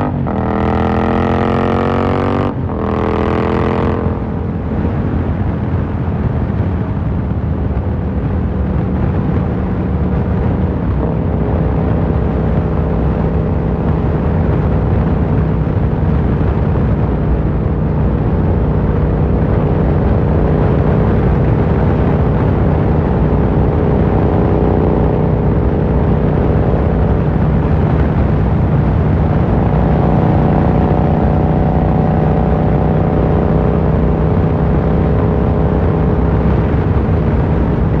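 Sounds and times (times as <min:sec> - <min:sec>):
motorcycle engine running: 0:00.0 - 0:38.0
wind noise: 0:00.0 - 0:38.0.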